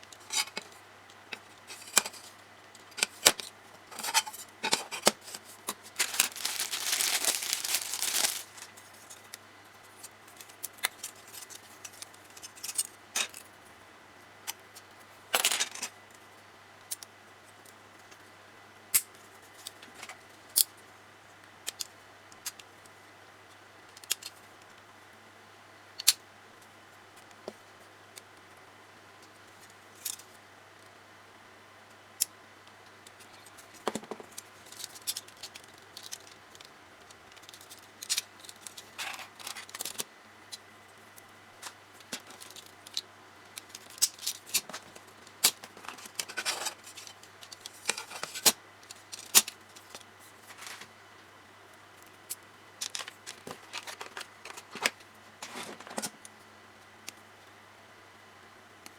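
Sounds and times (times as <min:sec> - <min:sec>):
small plastic parts clicking: 0:52.8 - 0:55.0.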